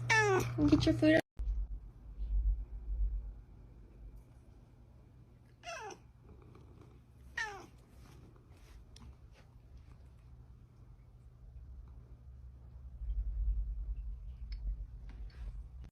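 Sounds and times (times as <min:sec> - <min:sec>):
cat meowing: 0:05.6 - 0:06.0, 0:07.4 - 0:07.7.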